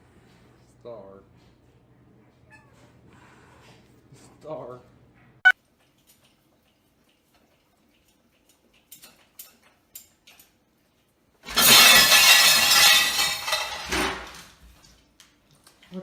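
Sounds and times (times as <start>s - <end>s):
object falling and breaking: 11.5s - 14.5s.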